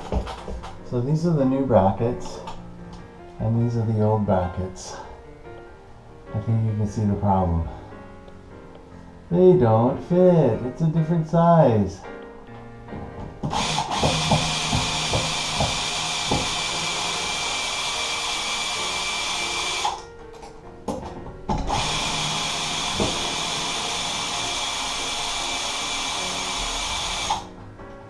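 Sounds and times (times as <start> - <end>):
power drill running: 13.4 - 20.0, 21.6 - 27.5.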